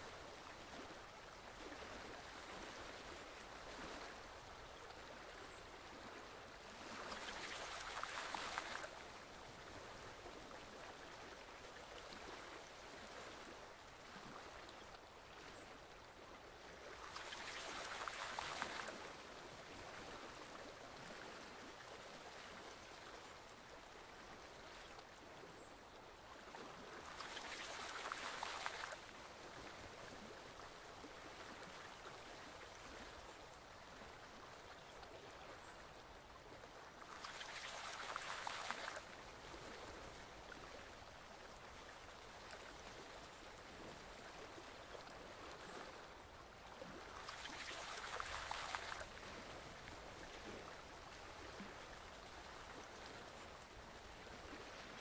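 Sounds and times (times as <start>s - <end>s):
stream water rushing: 17.0s - 21.0s, 26.3s - 34.3s, 37.0s - 44.1s, 46.2s - 55.0s.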